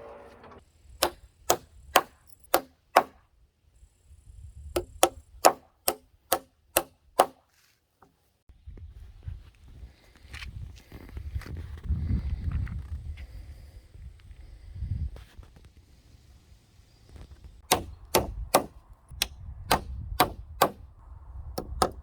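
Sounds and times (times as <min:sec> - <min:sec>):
hammer striking wood: 0:01.0 - 0:03.2, 0:04.8 - 0:07.4, 0:17.6 - 0:20.8, 0:21.6 - 0:22.0.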